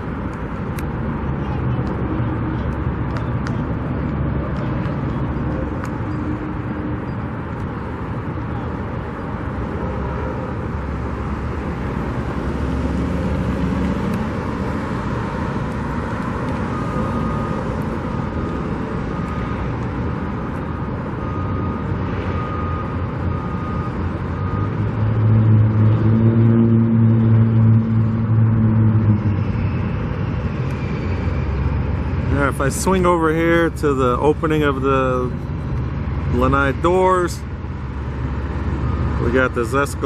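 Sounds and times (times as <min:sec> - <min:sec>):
road traffic: 0:00.0 - 0:40.0
vehicle engine passing close: 0:09.3 - 0:40.0.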